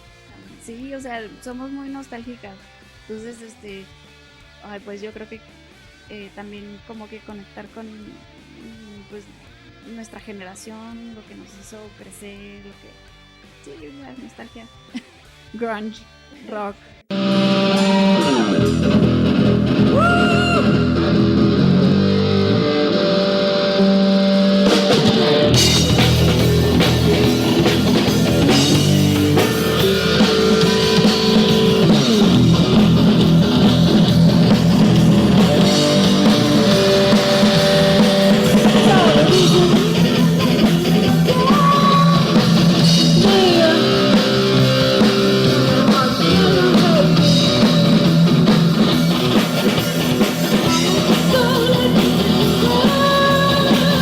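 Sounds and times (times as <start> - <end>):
rock band guitar: 0.0 - 54.0
drums and cymbals: 17.1 - 21.4, 24.4 - 54.0
person singing: 17.3 - 18.9, 35.4 - 48.6, 50.6 - 54.0.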